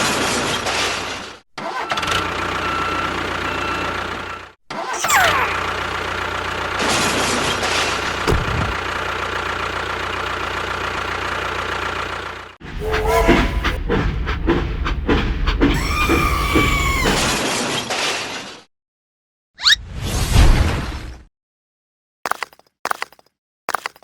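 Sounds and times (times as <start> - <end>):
falling whistle-like glide: 12.8 - 13.8.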